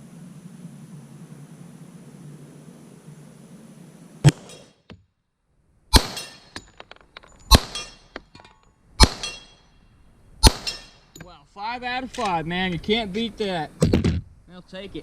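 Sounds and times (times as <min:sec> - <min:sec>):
handgun shots: 0:05.9 - 0:06.5, 0:07.5 - 0:08.0, 0:09.0 - 0:09.5, 0:10.4 - 0:11.0
bullet clanging on steel plate: 0:06.1 - 0:09.8, 0:10.5 - 0:11.3.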